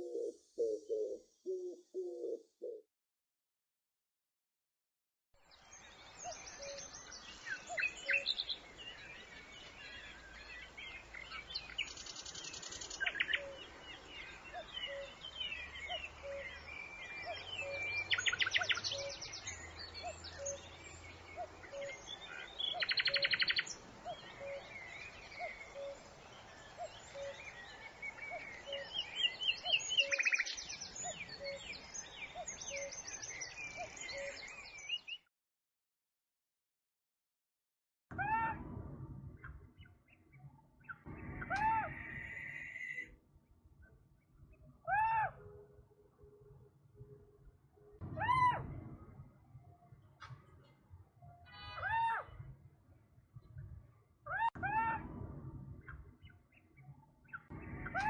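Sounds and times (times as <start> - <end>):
birds chirping and singing: 5.5 - 35.2, 39.4 - 43.1, 44.4 - 45.9, 51.4 - 52.5, 54.3 - 58.0.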